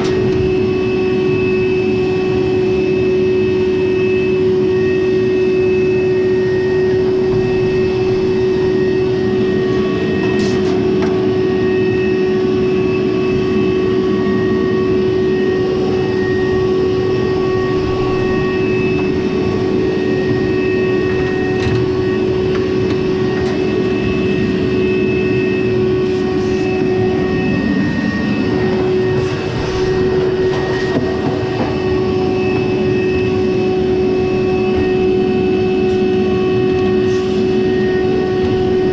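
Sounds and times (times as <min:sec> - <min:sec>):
dryer drum rumbling: 0:26.8 - 0:33.0.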